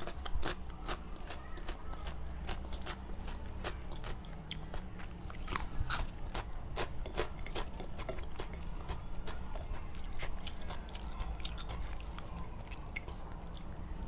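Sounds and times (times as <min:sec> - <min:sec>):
wet mouth chewing clicks: 0:00.0 - 0:13.7
steady high-pitched whine: 0:00.0 - 0:14.0.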